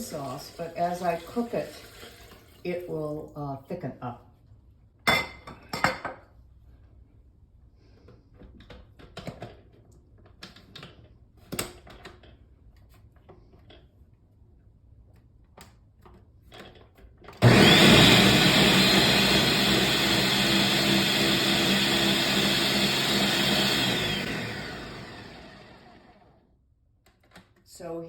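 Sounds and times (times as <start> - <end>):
blender motor whining: 17.4 - 26.4.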